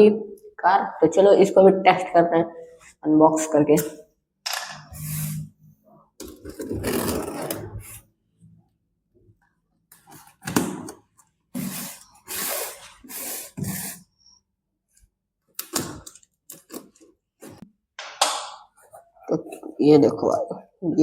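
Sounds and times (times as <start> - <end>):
cardboard box rubbing and scraping: 6.5 - 8.1, 11.6 - 14.0.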